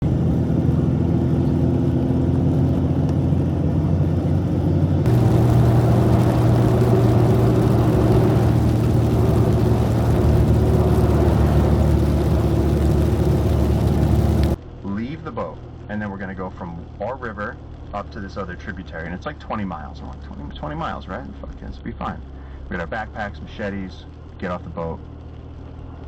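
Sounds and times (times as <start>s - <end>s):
broad rushing noise: 0.0s - 15.6s
vehicle engine drone: 0.0s - 26.0s.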